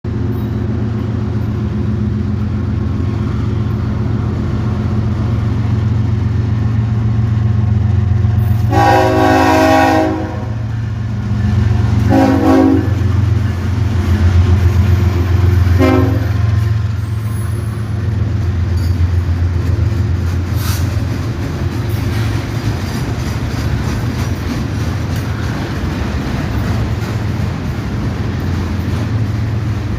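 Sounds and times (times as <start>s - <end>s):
diesel locomotive rumbling: 0.0s - 29.9s
locomotive air horn blasts: 8.6s - 10.6s, 12.0s - 13.2s, 15.6s - 16.6s.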